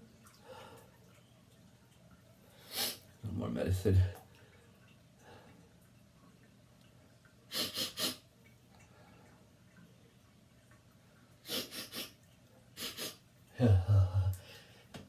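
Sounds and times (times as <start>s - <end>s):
person sniffing: 2.6s - 3.0s, 7.5s - 8.2s, 11.4s - 12.2s, 12.8s - 13.2s.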